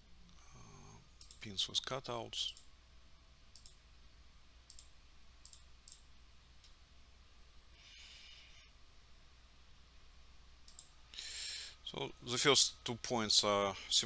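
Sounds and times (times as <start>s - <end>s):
soft hiss: 0.0s - 14.0s
computer mouse clicks: 1.2s - 1.4s, 3.5s - 3.8s, 4.7s - 6.8s, 10.6s - 10.9s.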